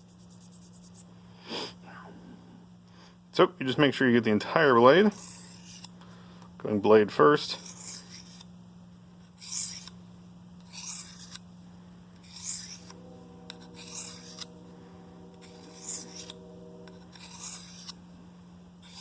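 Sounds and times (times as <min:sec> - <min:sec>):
knife scraping on sharpening stone: 0:05.2 - 0:05.9, 0:07.6 - 0:08.4, 0:09.4 - 0:09.9, 0:10.6 - 0:11.4, 0:12.2 - 0:14.5, 0:15.4 - 0:18.0.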